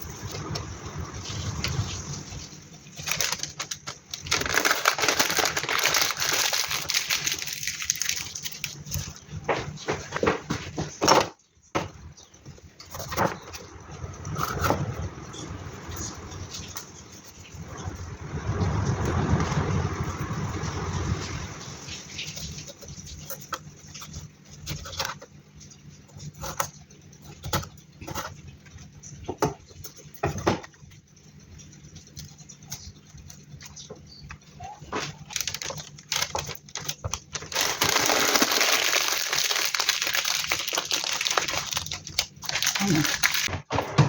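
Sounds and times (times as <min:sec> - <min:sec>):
kitchen handling clicks and knocks: 0:43.5 - 0:44.0.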